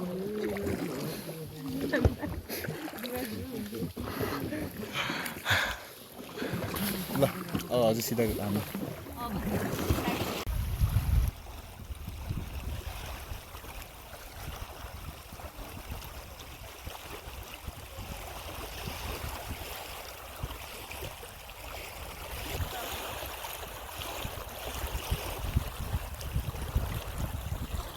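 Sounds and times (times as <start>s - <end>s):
water gurgling along boat hull: 0.0s - 27.9s
wind rumbling on microphone: 9.0s - 27.9s.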